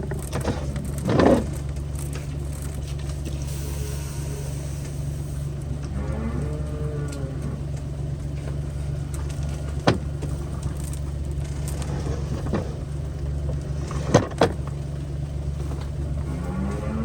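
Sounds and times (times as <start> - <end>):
sharp knocks and rattles: 0.0 - 3.2
vehicle engine humming: 0.0 - 17.0.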